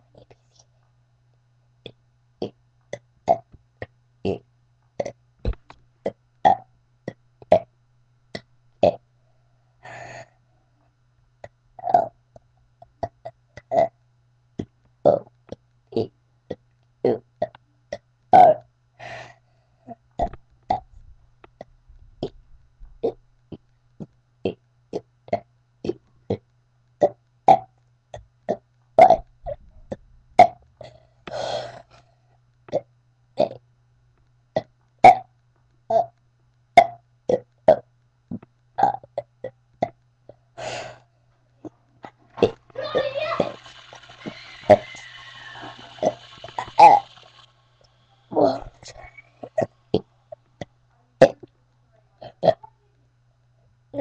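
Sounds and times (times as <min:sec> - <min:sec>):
faint low hum: 0:00.0 - 0:54.0
person burping: 0:02.4 - 0:03.5, 0:05.0 - 0:05.2, 0:06.5 - 0:07.7, 0:11.8 - 0:12.2, 0:38.8 - 0:40.0, 0:52.2 - 0:52.7.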